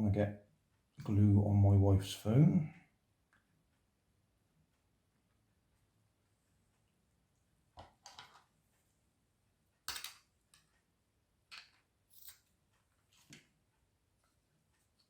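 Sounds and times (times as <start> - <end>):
small parts clicking and scraping: 9.9 - 10.8, 11.5 - 13.3.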